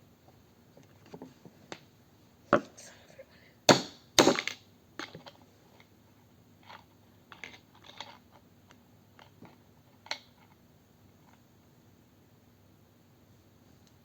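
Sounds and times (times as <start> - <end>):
sharp knock: 3.7 - 4.5.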